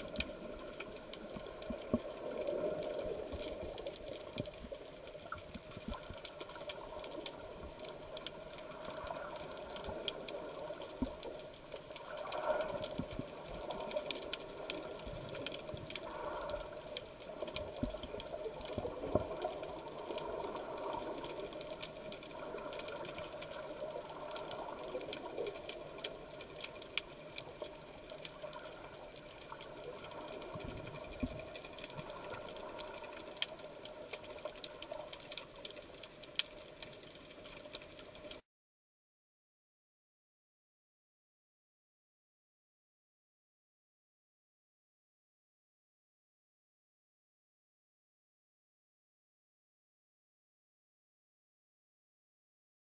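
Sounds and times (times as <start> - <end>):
crackle of small clicks: 0.0 - 38.4
underwater hum: 0.0 - 38.4.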